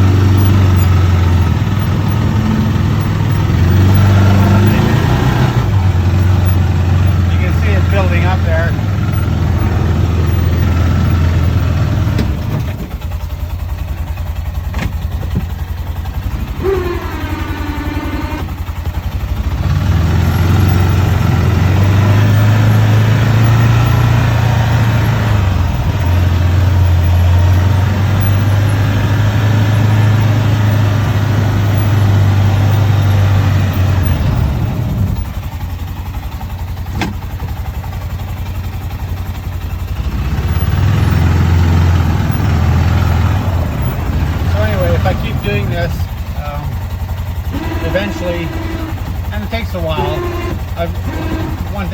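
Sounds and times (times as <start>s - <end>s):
vehicle engine running: 0.0s - 51.9s
blade pushing snow: 47.6s - 48.9s, 49.5s - 51.9s.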